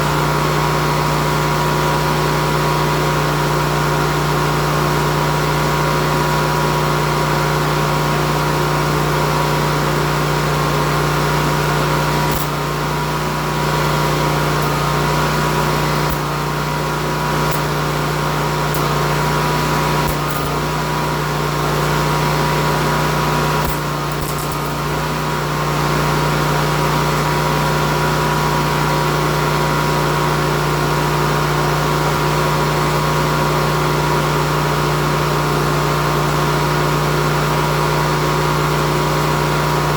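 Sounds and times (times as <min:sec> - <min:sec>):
machine hum: 0:12.1 - 0:26.3.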